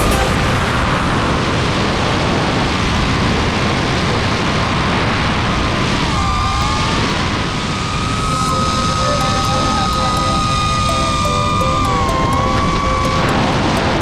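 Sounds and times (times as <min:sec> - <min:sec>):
wind noise rushing: 0:00.0 - 0:14.0
drone motors whining: 0:06.0 - 0:14.0.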